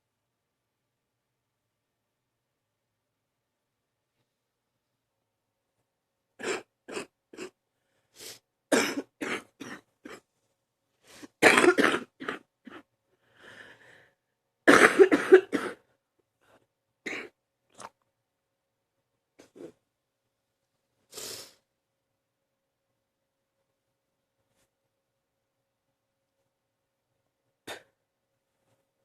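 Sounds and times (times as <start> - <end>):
person coughing: 6.4 - 7.6, 8.7 - 10.2, 11.4 - 12.9, 14.7 - 15.9, 17.1 - 17.4.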